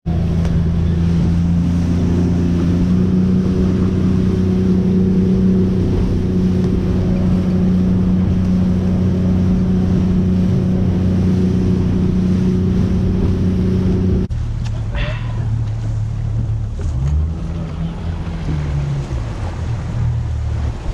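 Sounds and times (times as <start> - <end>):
boat engine humming: 0.0 - 20.9.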